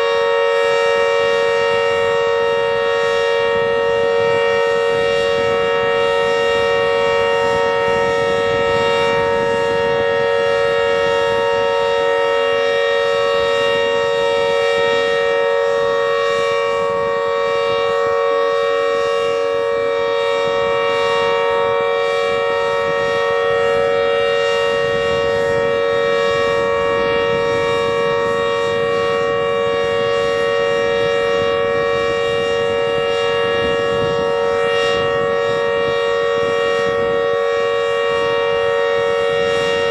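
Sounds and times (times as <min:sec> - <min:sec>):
steady warning siren chord: 0:00.0 - 0:39.9.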